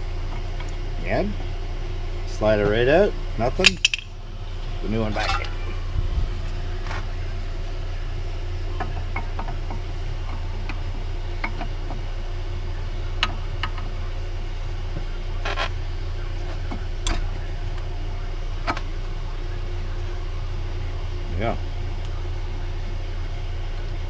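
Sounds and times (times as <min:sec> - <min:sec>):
low hum: 0:00.0 - 0:24.0
brake pads clicking metallically: 0:03.6 - 0:04.1.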